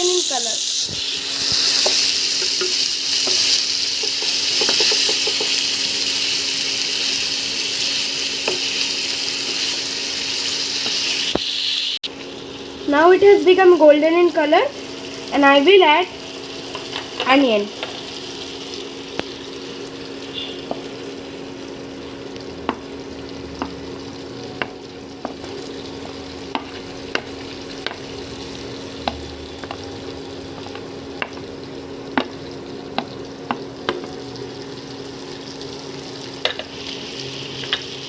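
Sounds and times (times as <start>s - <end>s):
food sizzling in a pan: 0.0s - 38.0s
spatula knocking against pan: 4.0s - 5.6s.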